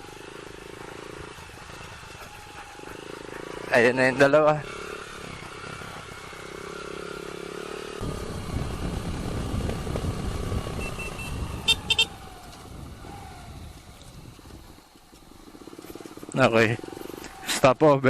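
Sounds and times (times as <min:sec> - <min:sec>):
motorcycle engines running: 0:00.0 - 0:18.0
short sharp beeps: 0:10.8 - 0:12.0.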